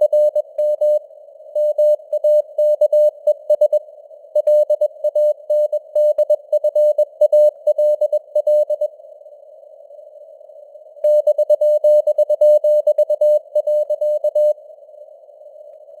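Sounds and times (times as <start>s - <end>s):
morse code tone: 11.1s - 14.5s.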